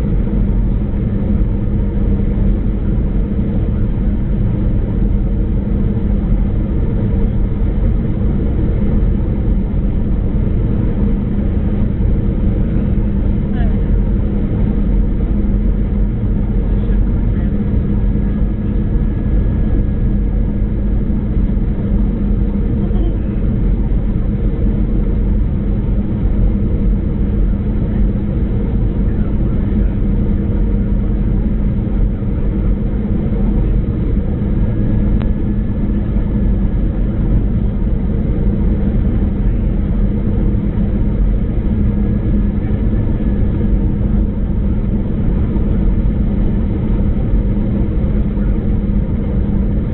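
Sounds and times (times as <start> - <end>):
airliner cabin rumble: 0.0 - 49.9.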